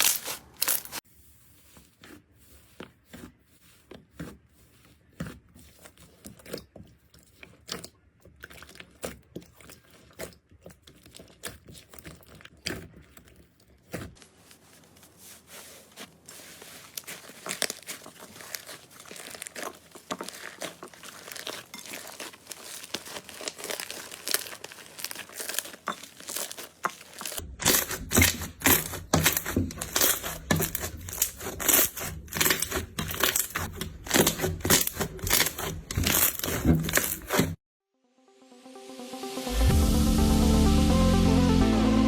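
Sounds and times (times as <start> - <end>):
slime crackling and popping: 0.0 - 1.0, 16.4 - 37.6.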